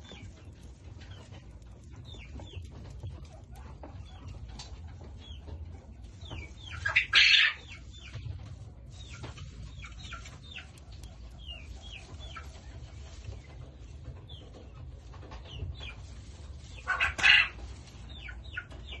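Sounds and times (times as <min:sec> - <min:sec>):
dry hay rustling: 0:05.1 - 0:19.0.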